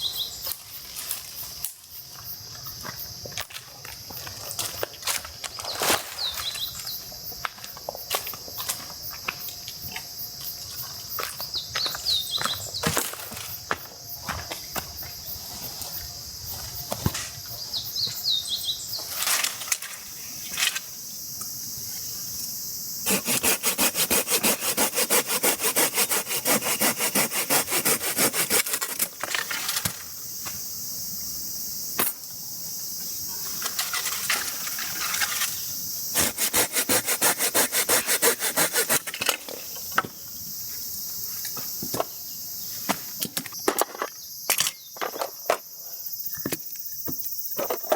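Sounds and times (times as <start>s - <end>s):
hand saw cutting wood: 23.0s - 29.4s, 36.1s - 39.4s.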